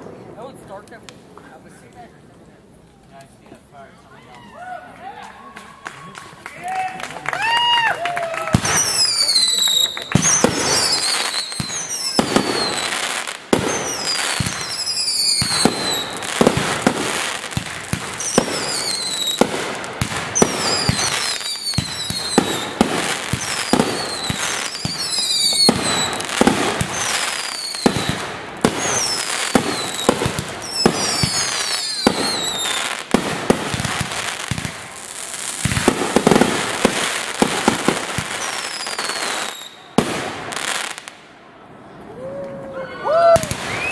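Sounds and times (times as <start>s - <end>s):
fireworks crackling: 0.0s - 4.3s, 5.2s - 41.4s, 43.2s - 43.9s
falling firework whistles: 8.5s - 34.8s, 43.3s - 43.9s
fireworks booming: 8.5s - 41.1s.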